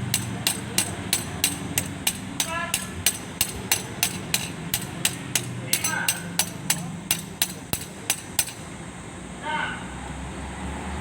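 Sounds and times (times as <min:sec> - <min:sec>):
hammer striking metal: 0:00.0 - 0:08.7.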